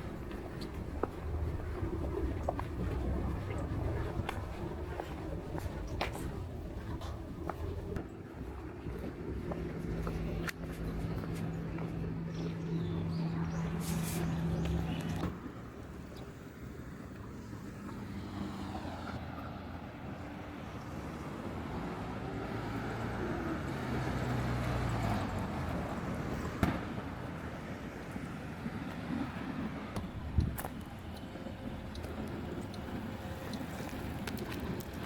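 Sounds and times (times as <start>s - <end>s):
low hum: 0.0s - 15.5s
car passing on road: 17.6s - 29.9s.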